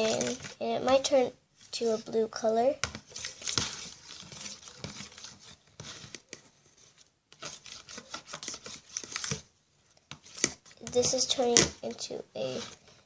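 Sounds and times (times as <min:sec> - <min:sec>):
scraping thick mixture in bowl: 0:00.0 - 0:00.6, 0:02.8 - 0:09.5, 0:10.1 - 0:13.0.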